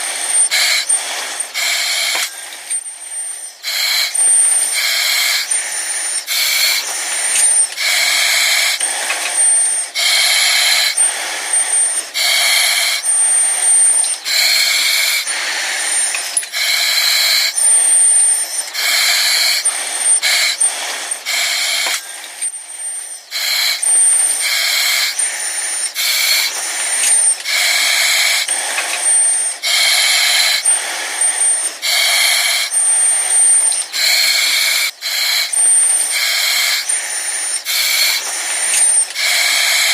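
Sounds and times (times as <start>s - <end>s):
breathing through oxygen mask: 0.0s - 39.9s.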